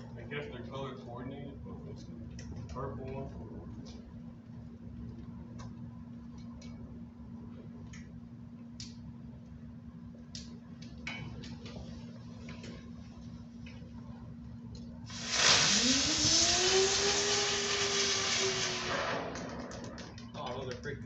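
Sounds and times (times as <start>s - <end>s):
spinner firework hissing and whining: 15.1s - 20.2s.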